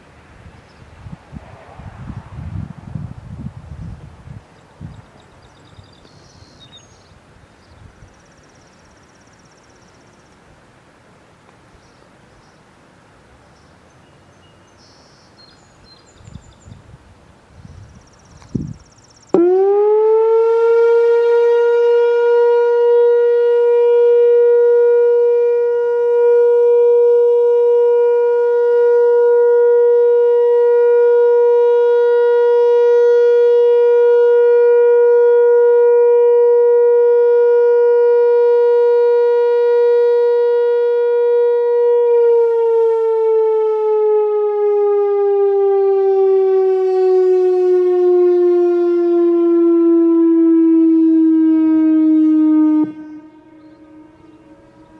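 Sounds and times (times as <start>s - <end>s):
electronic warning siren steady tone: 18.5s - 54.9s.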